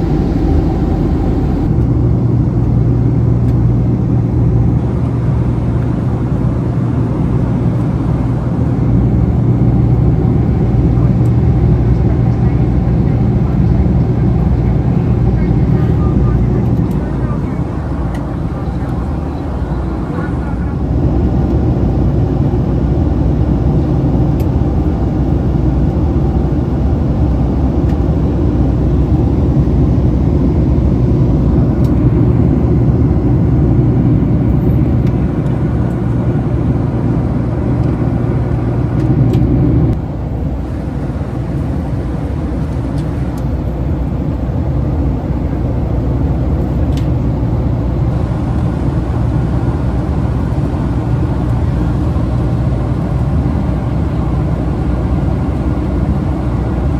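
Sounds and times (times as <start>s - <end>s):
low rumble of moving vehicle: 0.0s - 56.9s.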